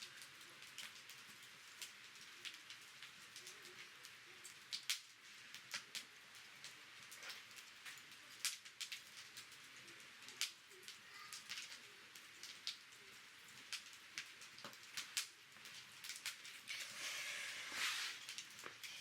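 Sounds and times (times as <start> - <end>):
campfire crackling and popping: 0.0 - 19.0
fire hissing: 0.0 - 19.0.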